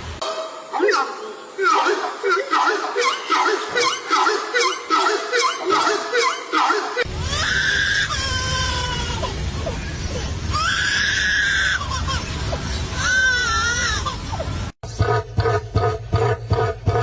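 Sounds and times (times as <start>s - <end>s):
bird crying calls: 0.2s - 7.8s
rapidly repeated bird call: 0.3s - 7.1s.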